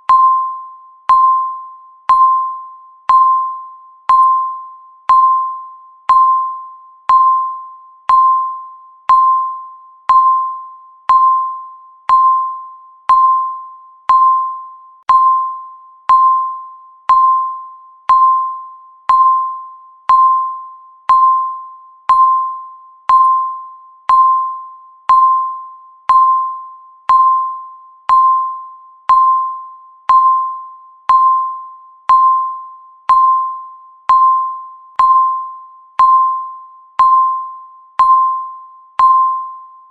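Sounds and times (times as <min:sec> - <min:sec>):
countdown timer beeping: 0:00.0 - 0:39.7.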